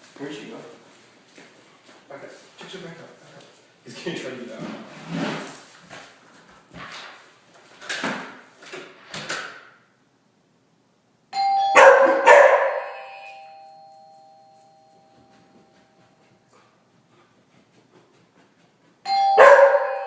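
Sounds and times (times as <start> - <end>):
doorbell chime: 11.3 - 16.2, 19.0 - 20.0.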